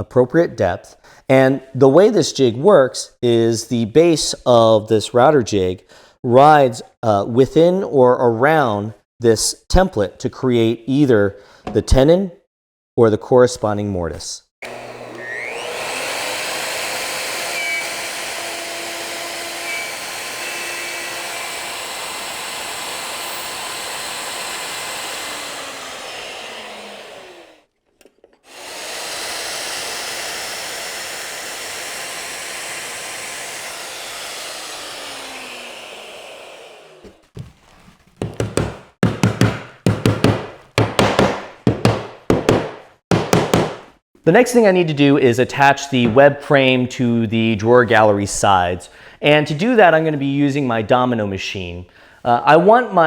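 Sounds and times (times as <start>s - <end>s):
router motor running: 14.6s - 27.6s, 28.5s - 37.2s
sharp knocks: 38.2s - 44.0s.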